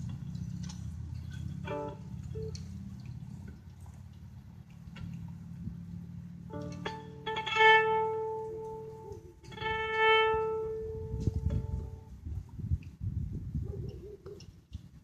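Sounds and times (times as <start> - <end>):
low steady hum: 0.0 - 13.3
long held instrumental notes: 1.2 - 3.0, 6.3 - 12.2.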